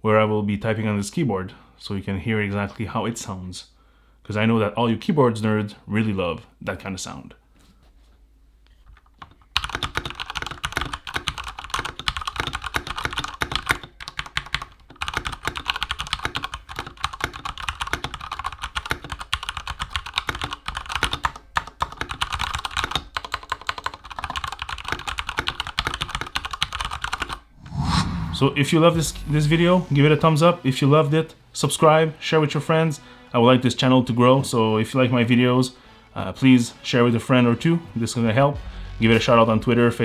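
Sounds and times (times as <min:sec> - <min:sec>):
mechanical keyboard typing: 0:09.2 - 0:27.4.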